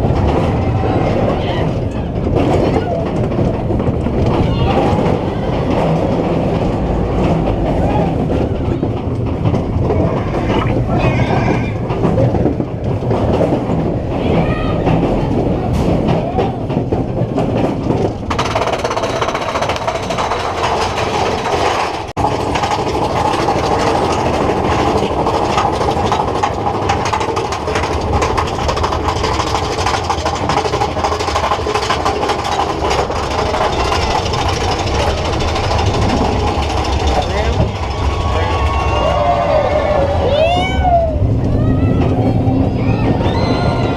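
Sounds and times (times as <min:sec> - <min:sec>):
roller coaster wheels rumbling on rails: 0:00.0 - 0:43.9.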